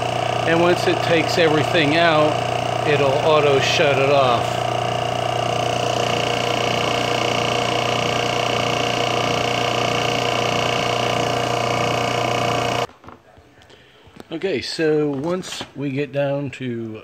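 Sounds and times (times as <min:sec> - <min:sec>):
machine humming with a whine: 0:00.0 - 0:12.9.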